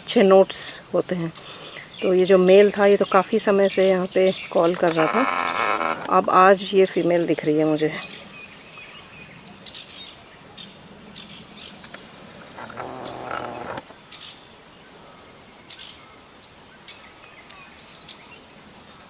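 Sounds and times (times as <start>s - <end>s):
crickets chirping: 0.1s - 16.5s
low drawn-out call: 11.9s - 13.8s.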